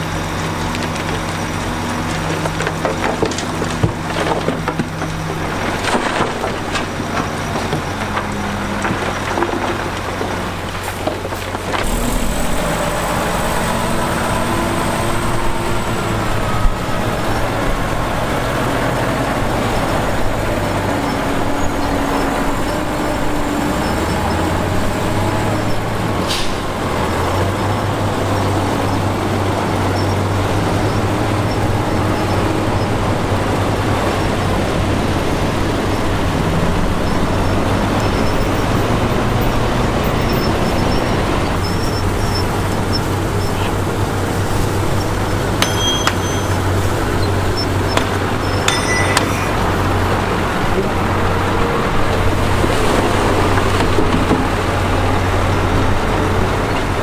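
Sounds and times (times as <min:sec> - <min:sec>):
diesel machinery engine drone: 0:00.0 - 0:57.0.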